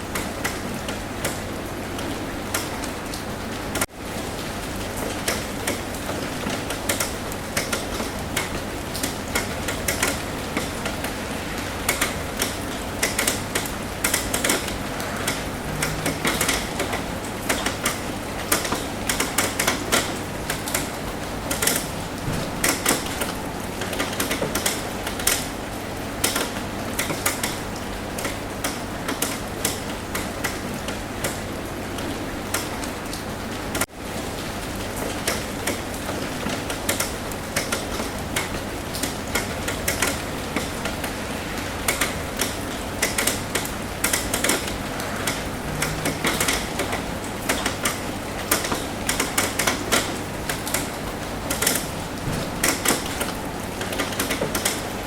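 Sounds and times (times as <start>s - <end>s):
rain hissing on a roof: 0.0s - 55.0s
raindrops tapping on roof: 0.0s - 55.0s.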